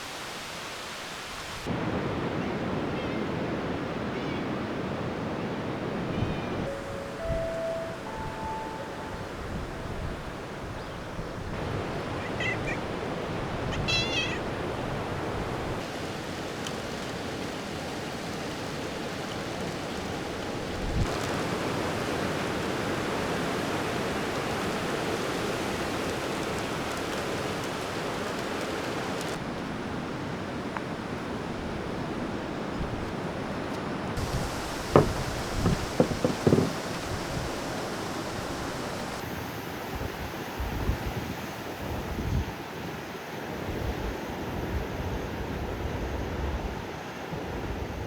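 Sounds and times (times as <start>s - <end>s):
wind: 0.0s - 48.0s
surf rushing: 6.6s - 29.4s, 34.2s - 39.2s
high wavering animal calls: 12.1s - 13.0s, 13.7s - 14.5s.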